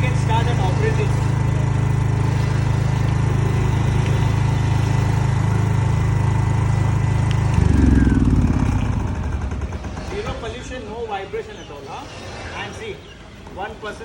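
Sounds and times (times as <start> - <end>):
generator engine humming: 0.0 - 12.2.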